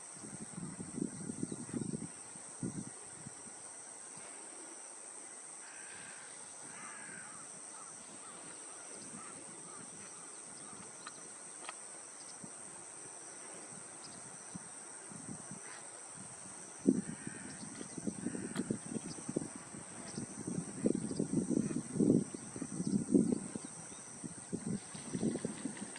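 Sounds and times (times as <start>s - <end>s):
faint ticks: 10.7s - 12.4s.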